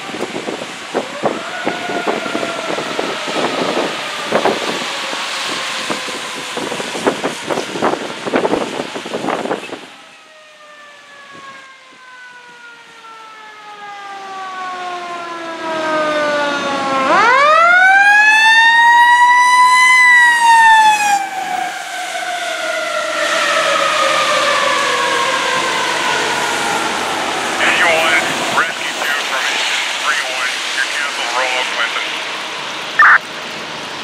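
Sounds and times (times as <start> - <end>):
fire engine siren winding: 9.9 - 27.4.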